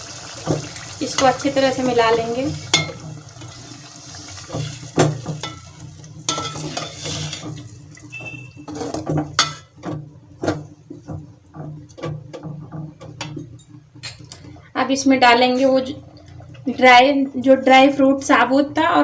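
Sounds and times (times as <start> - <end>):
food sizzling in oil: 0.0 - 13.8
spatula scraping a pan: 4.4 - 9.9.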